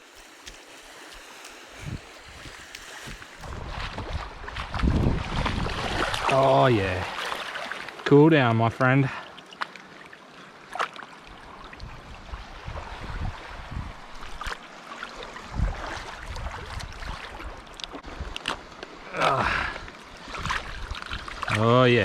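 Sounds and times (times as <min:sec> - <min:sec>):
water lapping at shore: 0:00.0 - 0:22.0
wind rumbling on microphone: 0:01.7 - 0:06.5, 0:11.4 - 0:14.6, 0:15.2 - 0:18.5, 0:19.5 - 0:21.6.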